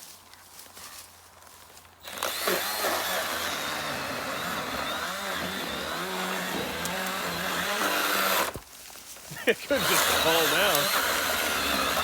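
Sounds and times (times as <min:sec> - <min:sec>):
battery chainsaw cutting wood: 0:02.0 - 0:08.6, 0:09.7 - 0:12.0.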